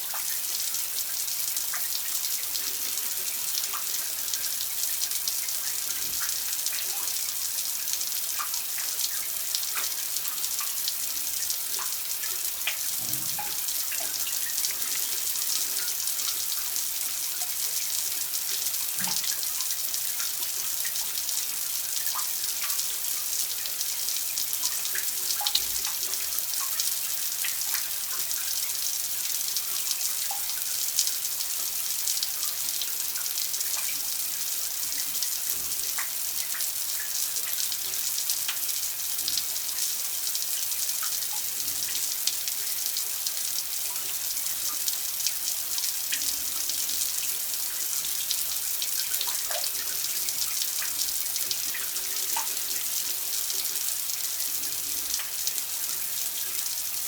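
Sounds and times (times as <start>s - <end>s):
water pouring and splashing: 11.4s - 21.0s.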